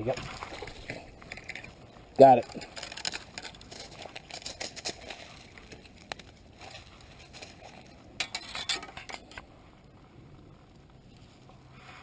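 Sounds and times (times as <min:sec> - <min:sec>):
small hard objects clinking: 0:00.1 - 0:09.4.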